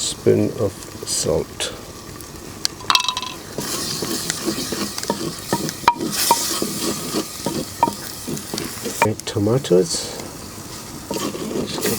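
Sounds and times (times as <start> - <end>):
onions sizzling in oil: 0.7 - 11.9
spoon scraping a clay pot: 3.6 - 9.1, 11.1 - 11.9.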